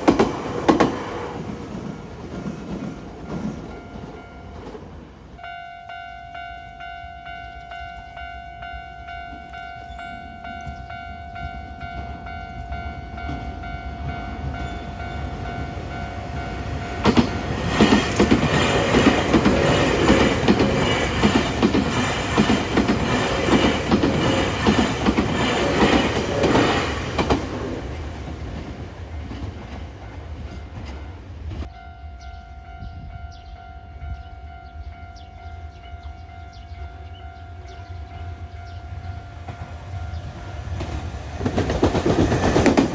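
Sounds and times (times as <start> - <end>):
train passing over crossing: 0.0 - 42.9
level crossing warning bell: 2.7 - 4.8, 5.4 - 27.1, 31.6 - 40.9.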